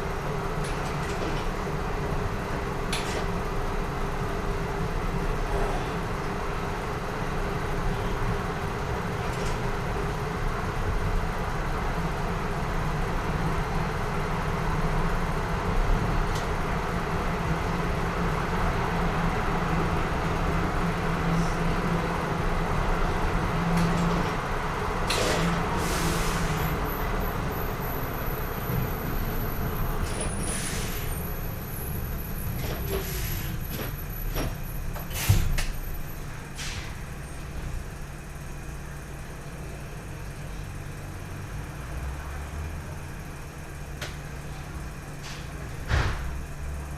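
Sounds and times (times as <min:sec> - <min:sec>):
bus engine running: 0:00.0 - 0:46.9
air brake hiss: 0:25.1 - 0:26.8, 0:30.0 - 0:31.2, 0:32.8 - 0:33.6, 0:35.0 - 0:35.6, 0:36.5 - 0:37.0.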